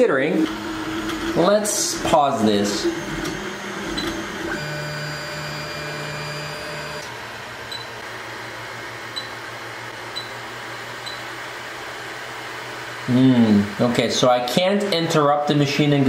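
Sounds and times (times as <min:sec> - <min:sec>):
printer motors whining: 0:00.0 - 0:11.6
fan hum: 0:00.0 - 0:16.0.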